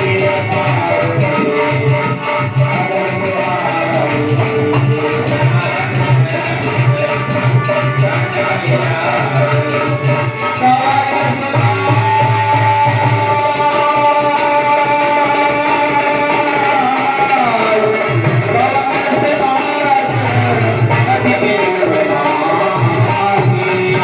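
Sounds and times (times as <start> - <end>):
jingling hand percussion: 0.0 - 24.0
pulsing drum beat: 0.0 - 24.0.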